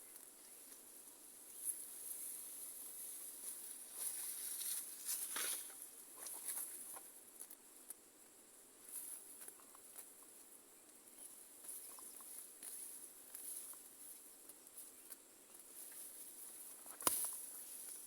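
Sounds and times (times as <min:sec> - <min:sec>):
weeds rustling being pulled: 0:01.5 - 0:06.8.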